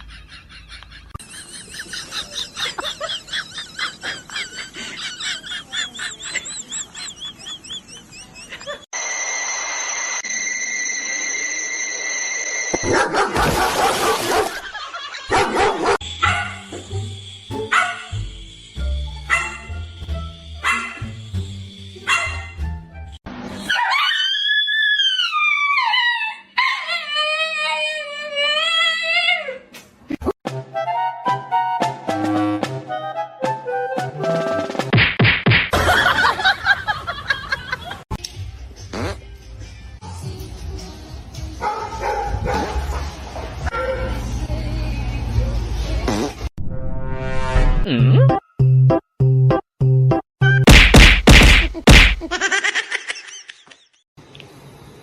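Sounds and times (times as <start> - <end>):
steady high tone: 9.0 - 12.8
dog barking: 12.8 - 14.6, 15.3 - 16.6, 17.7 - 18.1, 19.3 - 19.6, 20.6 - 21.0, 22.1 - 22.6, 41.6 - 44.2.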